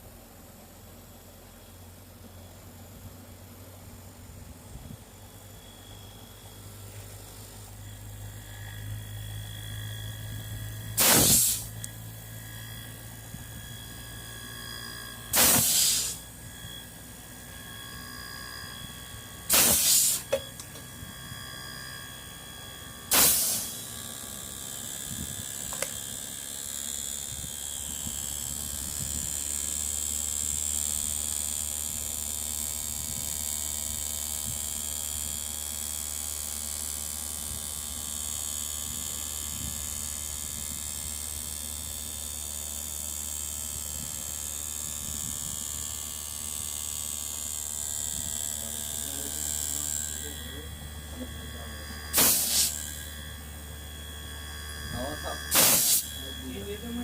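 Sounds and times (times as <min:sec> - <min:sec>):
loud hissing blasts: 0:11.0 - 0:11.7, 0:15.3 - 0:16.2, 0:19.5 - 0:20.4, 0:23.1 - 0:23.8, 0:52.1 - 0:52.9, 0:55.2 - 0:56.5
steady high hiss: 0:11.0 - 0:12.1, 0:14.8 - 0:16.3, 0:19.5 - 0:20.7, 0:48.6 - 0:52.9, 0:55.0 - 0:57.0.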